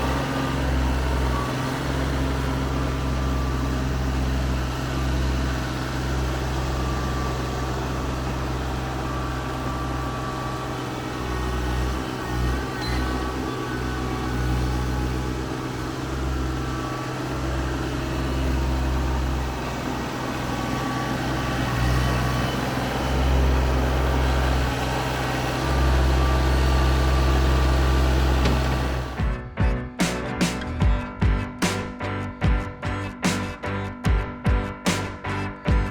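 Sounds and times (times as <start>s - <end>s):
tractor diesel engine running: 0.0s - 35.9s.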